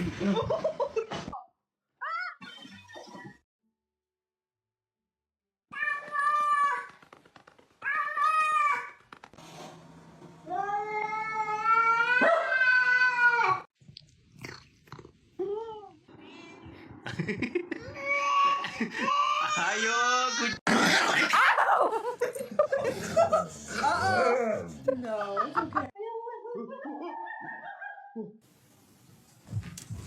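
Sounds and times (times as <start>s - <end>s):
cat yowling: 11.5s - 13.6s.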